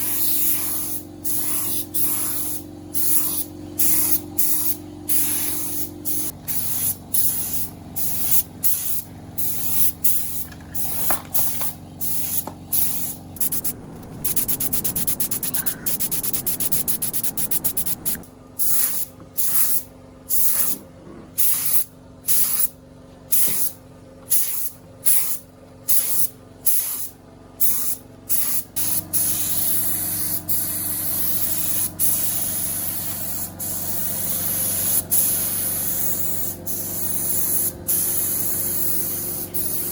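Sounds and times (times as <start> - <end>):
compressed air bursts: 0.0 - 20.8, 21.4 - 22.7, 23.3 - 39.9
low motor hum: 2.4 - 18.6, 30.3 - 39.9.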